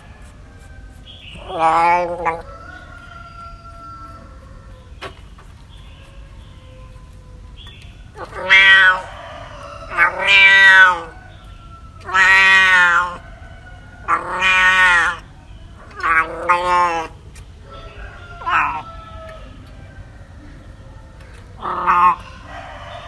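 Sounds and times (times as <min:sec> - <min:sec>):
cat meowing: 0:01.4 - 0:02.4, 0:08.2 - 0:09.1, 0:09.9 - 0:11.2, 0:12.0 - 0:13.2, 0:14.0 - 0:15.3, 0:15.9 - 0:17.2, 0:18.4 - 0:18.8, 0:21.6 - 0:22.2.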